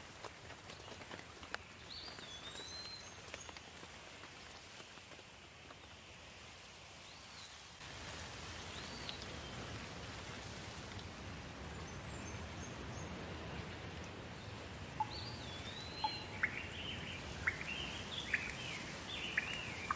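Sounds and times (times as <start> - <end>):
rain falling: 0.0 - 6.9, 7.7 - 19.9
sharp drips: 7.9 - 19.9
bird chirps: 15.0 - 19.9.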